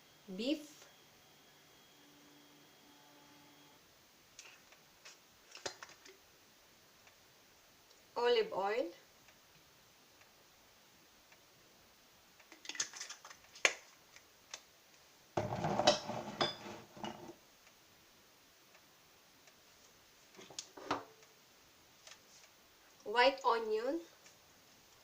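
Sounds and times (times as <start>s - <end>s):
loud kitchen clatter: 15.4s - 17.3s.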